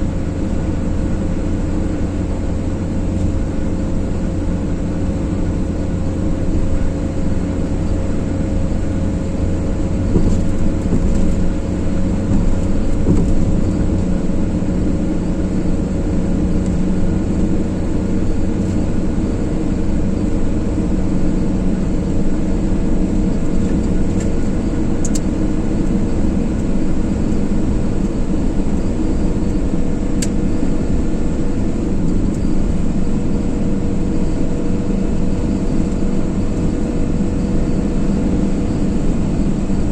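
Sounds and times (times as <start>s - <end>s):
car engine hum: 0.0s - 39.9s
tyre road noise: 0.0s - 39.9s.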